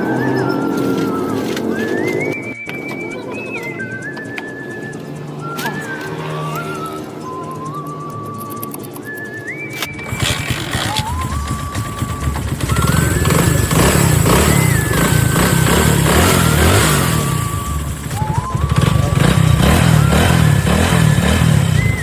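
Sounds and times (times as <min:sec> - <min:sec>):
background music: 0:00.0 - 0:22.0
motorcycle engine running: 0:09.9 - 0:22.0.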